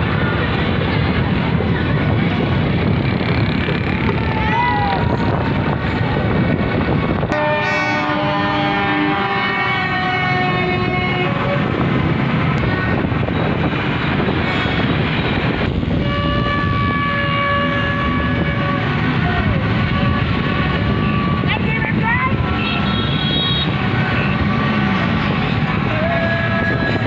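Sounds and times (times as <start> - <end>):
crowd noise: 0.0 - 16.8, 17.8 - 27.0
street traffic: 0.0 - 27.0
horns blaring: 6.7 - 27.0.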